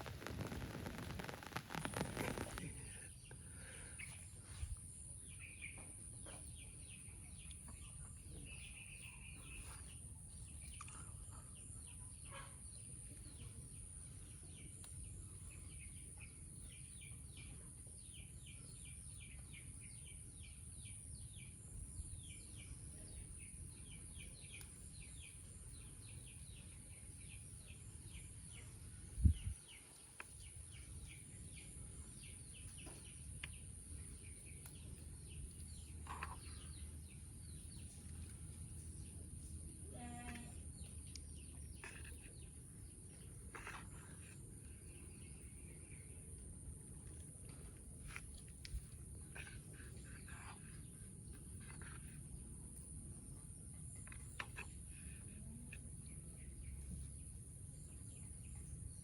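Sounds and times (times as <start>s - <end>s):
thin high hiss: 0.0s - 2.8s
small birds chirping: 0.0s - 59.0s.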